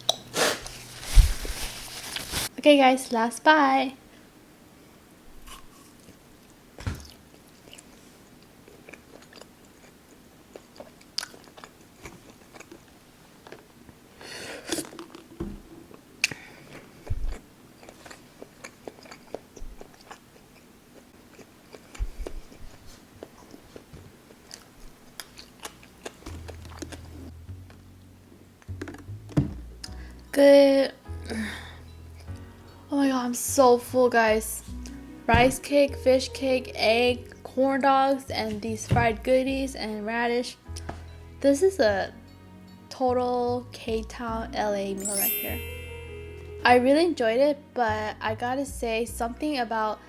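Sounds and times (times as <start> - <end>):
person chewing food: 5.4 - 13.7, 16.2 - 27.8, 28.6 - 30.0.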